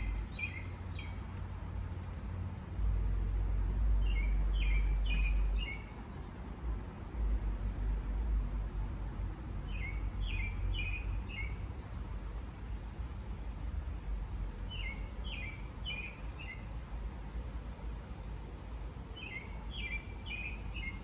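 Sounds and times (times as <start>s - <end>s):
songbird chirping: 0.0s - 1.2s, 4.0s - 5.9s, 9.6s - 11.6s, 14.6s - 16.8s, 19.2s - 21.0s
steady low rumble: 0.0s - 5.7s.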